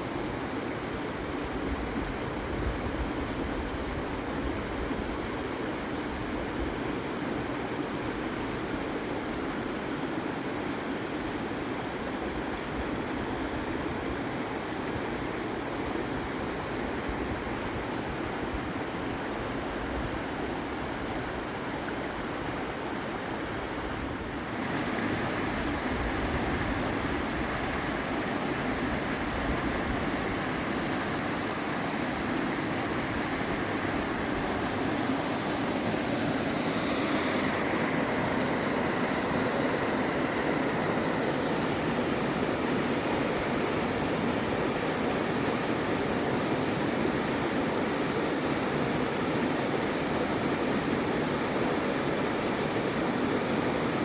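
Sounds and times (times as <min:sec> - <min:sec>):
stream water tumbling over rocks: 0:21.0 - 0:54.0.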